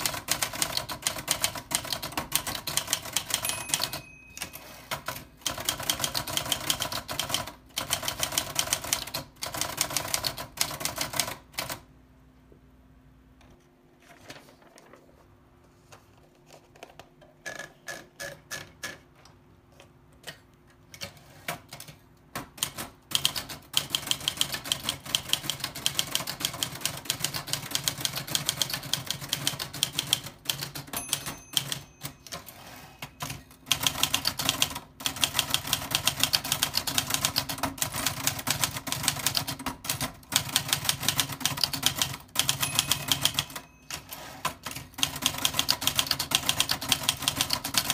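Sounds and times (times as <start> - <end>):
typewriter key strikes: 40.7 - 47.9.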